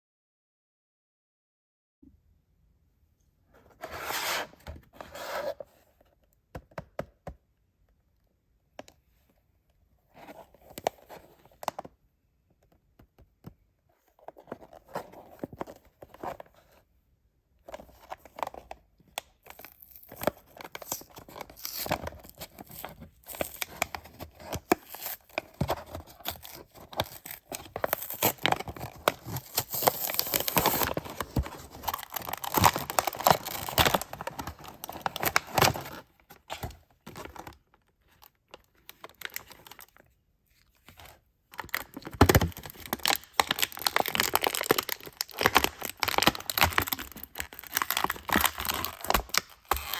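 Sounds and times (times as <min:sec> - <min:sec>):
packaging tearing and crinkling: 0:19.4 - 0:37.5, 0:41.6 - 0:49.9.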